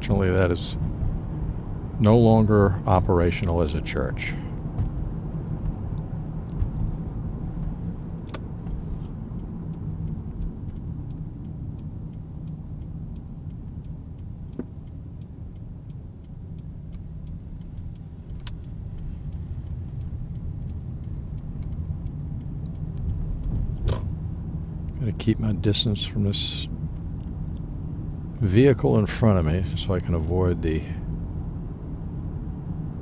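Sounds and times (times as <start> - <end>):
car engine and road noise: 0.0 - 33.0
faint sharp clicks: 7.6 - 24.1.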